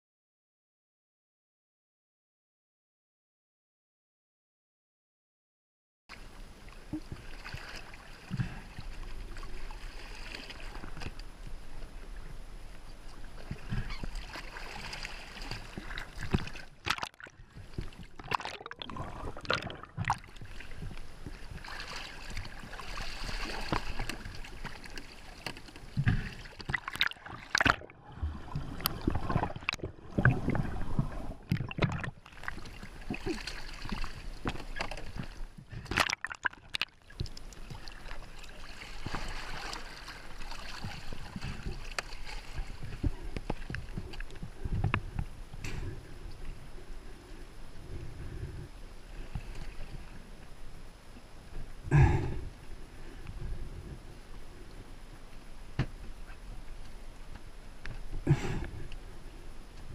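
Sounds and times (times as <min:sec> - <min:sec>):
water sloshing and gurgling: 0:06.1 - 0:59.9
knocks and splashes: 0:13.8 - 0:20.8, 0:21.6 - 0:44.0.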